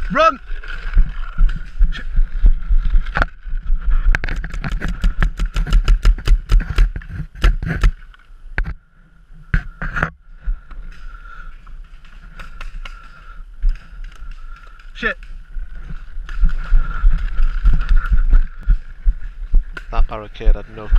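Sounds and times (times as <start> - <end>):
gear jostling against microphone: 4.0 - 8.0.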